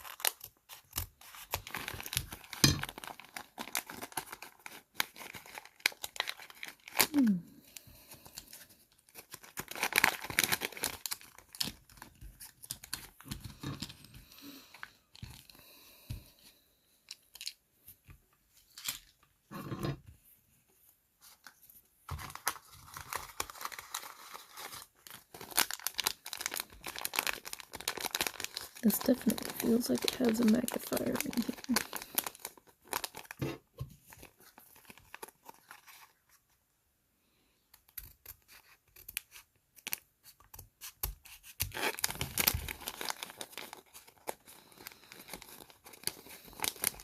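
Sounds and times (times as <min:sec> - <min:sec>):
plastic packaging tearing and crinkling: 0:00.0 - 0:07.4, 0:08.3 - 0:14.1, 0:22.2 - 0:36.2, 0:38.0 - 0:47.0.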